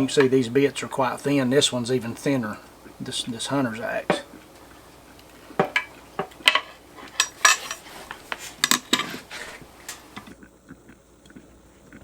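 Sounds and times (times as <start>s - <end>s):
metal objects clinking: 5.6s - 10.3s.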